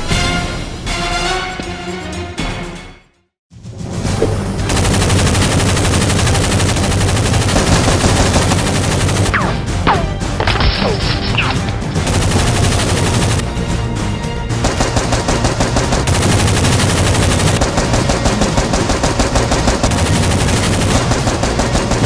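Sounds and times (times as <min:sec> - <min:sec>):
automatic gunfire: 0:04.7 - 0:13.5, 0:14.6 - 0:22.0.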